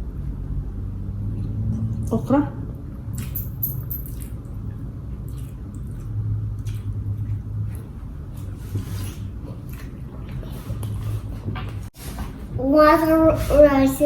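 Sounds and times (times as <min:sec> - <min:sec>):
chewing mouth noises: 0:04.1 - 0:08.6, 0:09.3 - 0:11.0.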